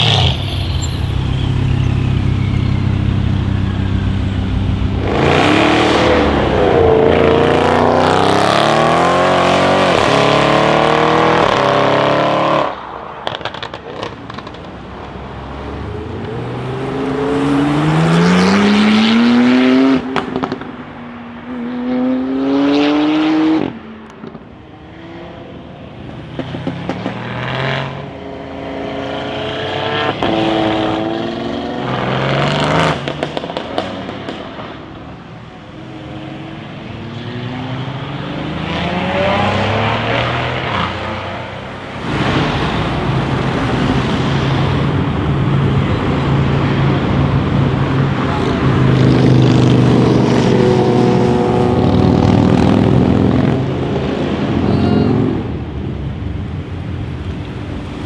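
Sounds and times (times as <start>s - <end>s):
car engine revving: 0.0s - 20.7s, 36.7s - 55.7s.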